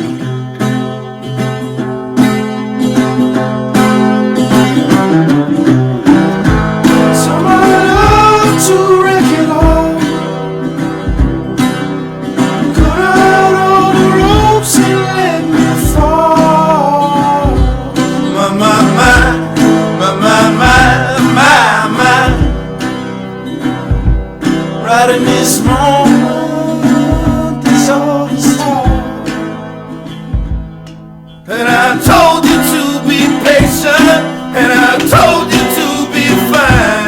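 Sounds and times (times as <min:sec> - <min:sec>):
strummed acoustic guitar: 0:00.0 - 0:37.0
low thump on each beat: 0:06.0 - 0:07.2, 0:07.8 - 0:08.6, 0:09.5 - 0:10.2, 0:11.0 - 0:11.8, 0:12.6 - 0:13.4, 0:14.2 - 0:14.9, 0:15.7 - 0:16.5, 0:17.4 - 0:18.2, 0:18.9 - 0:19.8, 0:20.6 - 0:21.4, 0:22.1 - 0:23.1, 0:23.7 - 0:24.7, 0:25.6 - 0:26.2, 0:27.0 - 0:27.8, 0:28.7 - 0:29.5, 0:30.2 - 0:31.1, 0:31.8 - 0:34.3, 0:34.9 - 0:37.0
person singing: 0:06.4 - 0:10.4, 0:12.6 - 0:22.8, 0:24.8 - 0:29.6, 0:31.5 - 0:37.0.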